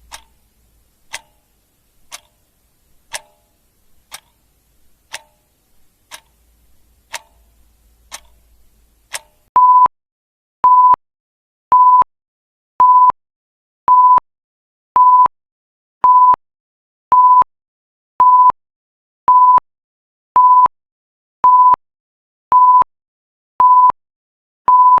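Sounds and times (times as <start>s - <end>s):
faint clicks: 0.0s - 9.5s
electronic timer alarm beeping: 9.6s - 9.9s, 22.6s - 22.9s, 23.6s - 24.0s, 24.7s - 25.0s.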